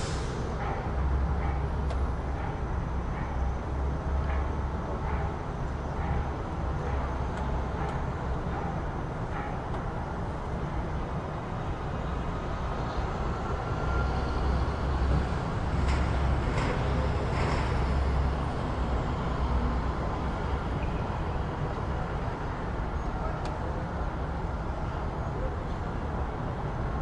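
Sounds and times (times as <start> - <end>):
passing vehicles rumbling: 0.0 - 27.0.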